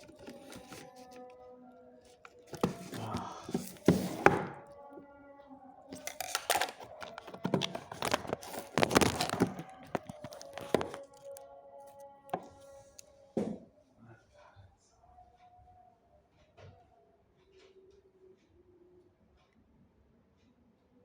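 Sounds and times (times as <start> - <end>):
toy packaging knocks and rustles: 0.0 - 1.2, 2.3 - 4.6, 6.0 - 11.4.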